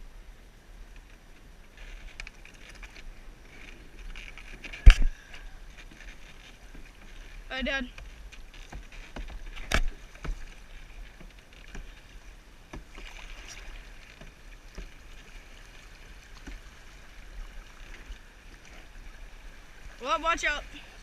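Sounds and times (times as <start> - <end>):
water splashing and lapping: 0.9 - 21.0
paddle knocking against canoe: 4.0 - 20.7.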